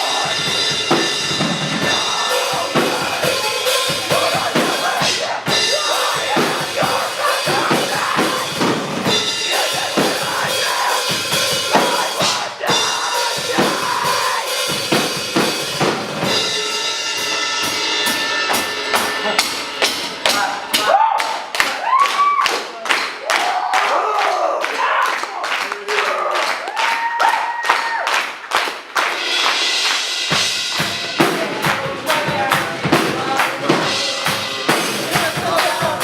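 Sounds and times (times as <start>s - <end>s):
bass drum and snare hits: 0.0s - 16.6s
live metal band playing: 0.0s - 21.6s, 29.4s - 36.0s.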